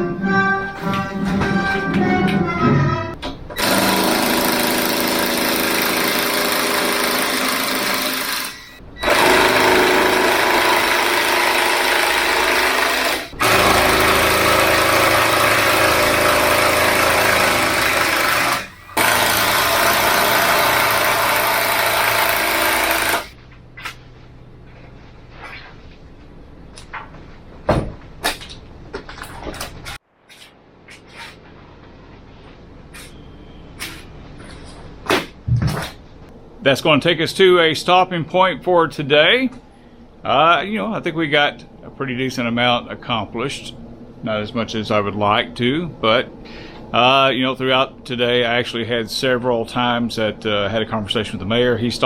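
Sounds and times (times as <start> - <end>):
power tool running hard: 3.6 - 23.4.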